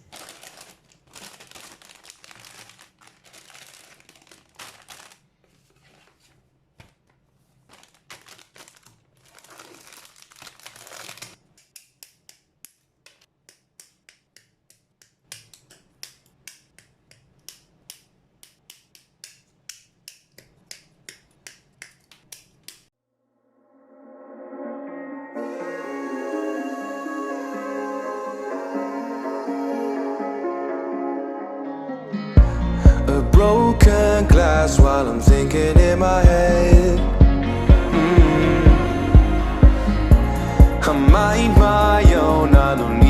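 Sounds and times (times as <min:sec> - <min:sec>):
plastic rustling and crinkling: 0:00.0 - 0:11.5.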